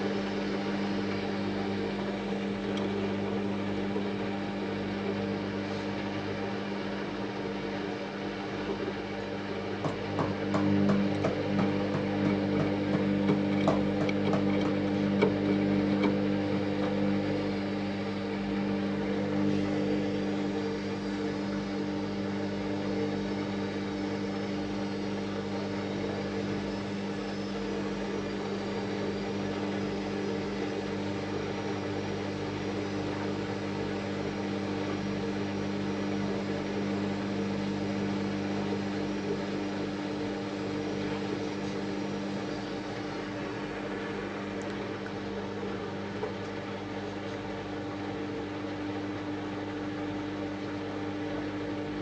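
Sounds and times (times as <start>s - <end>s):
washing machine motor hum: 0.0s - 52.0s
washing machine clicking: 9.8s - 17.1s.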